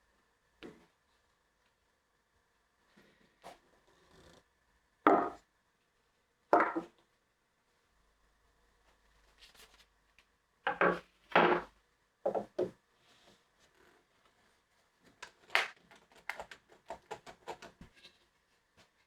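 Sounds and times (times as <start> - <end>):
wooden knocks: 5.1 - 5.4, 6.6 - 6.9.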